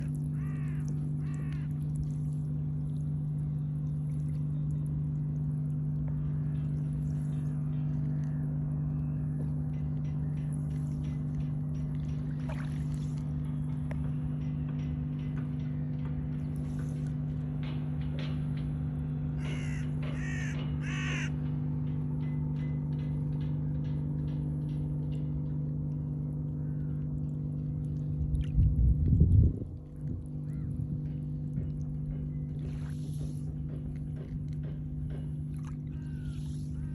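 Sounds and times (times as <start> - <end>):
steady low hum: 0.0 - 36.9
crow cawing: 0.1 - 1.8, 19.4 - 21.4, 30.5 - 30.7, 35.9 - 36.9.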